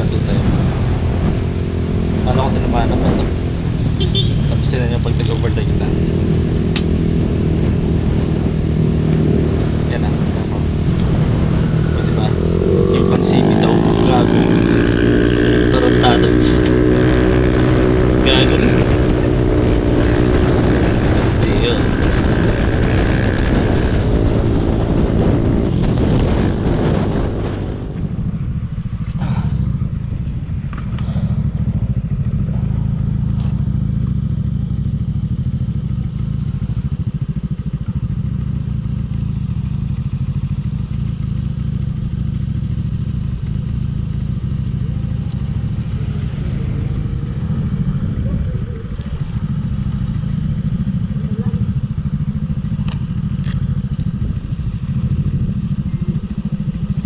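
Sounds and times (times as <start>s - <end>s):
wind rushing over microphone: 0.0s - 34.0s, 44.4s - 52.6s
motorcycle engine drone: 0.0s - 57.0s.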